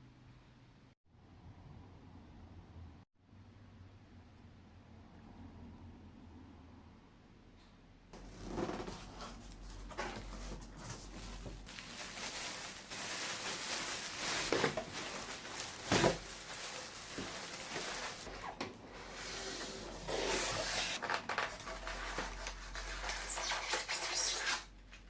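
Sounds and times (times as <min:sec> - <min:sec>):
rubbing and rustling: 0:08.2 - 0:24.4.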